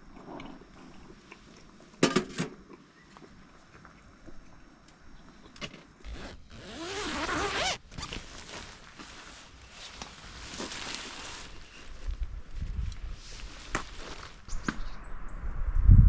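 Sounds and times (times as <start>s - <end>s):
zipper drawn open: 6.0s - 11.7s
light rustling: 6.0s - 14.8s.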